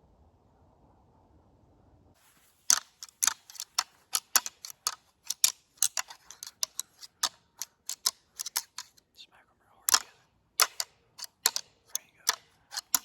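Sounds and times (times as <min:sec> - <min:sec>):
deer antlers clacking together: 0:02.7 - 0:09.0, 0:09.9 - 0:13.0.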